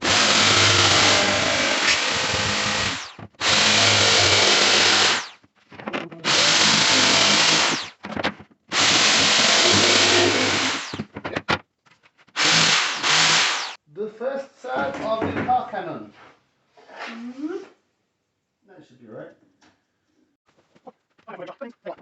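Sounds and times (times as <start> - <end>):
power drill running: 0.0 - 5.4, 6.2 - 8.0, 8.7 - 11.0, 12.4 - 13.8.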